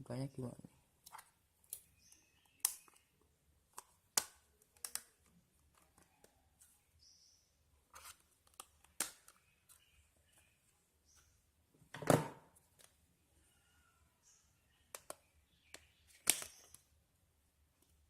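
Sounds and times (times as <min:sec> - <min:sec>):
plastic clicks from handling phone: 0:14.9 - 0:16.9.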